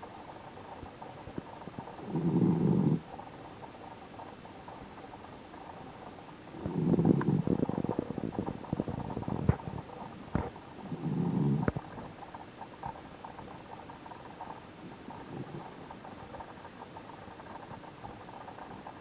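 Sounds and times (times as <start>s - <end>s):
pet snoring: 1.4s - 3.3s, 6.5s - 12.1s, 14.0s - 18.7s.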